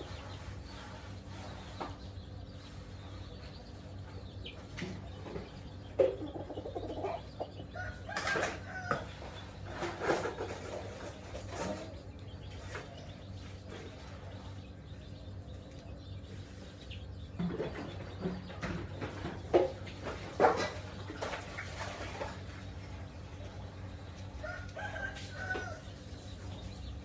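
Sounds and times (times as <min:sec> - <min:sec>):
chickens clucking: 0:00.0 - 0:27.0
steady low hum: 0:00.0 - 0:27.0.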